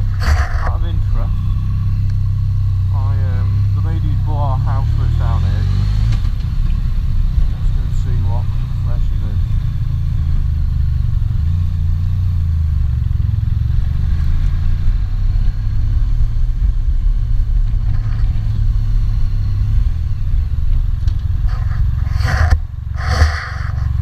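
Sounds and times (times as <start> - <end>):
wind noise: 0.0 - 2.1, 13.8 - 24.0
motorcycle engine running: 0.0 - 24.0
short rushes of noise: 21.4 - 24.0.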